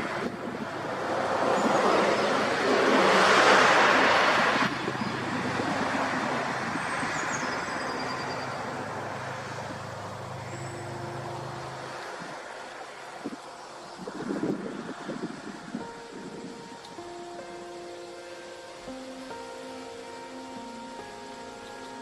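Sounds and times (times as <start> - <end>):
low engine hum: 0.0 - 12.6
vehicle passing engine and tyres: 0.0 - 15.7.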